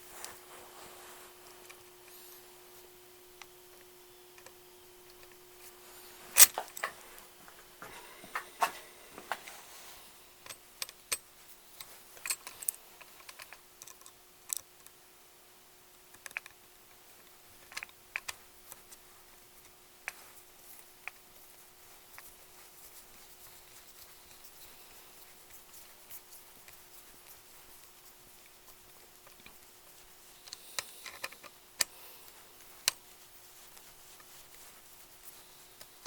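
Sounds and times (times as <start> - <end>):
faint steady hum: 0.0 - 36.0
metal tools clicking and tapping: 10.4 - 14.7.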